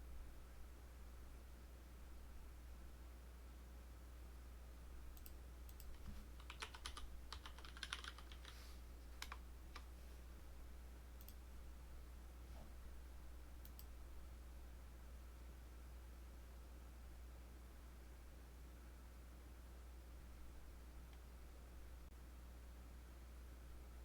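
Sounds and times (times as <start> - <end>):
computer keyboard typing: 5.1 - 9.9.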